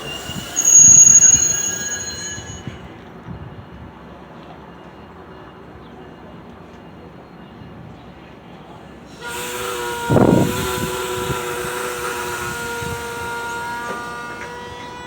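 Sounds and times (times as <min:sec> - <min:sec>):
high whining tones: 0:00.0 - 0:02.9
train air hiss: 0:00.0 - 0:03.0, 0:08.8 - 0:15.0
loud low horn blast: 0:09.2 - 0:15.0.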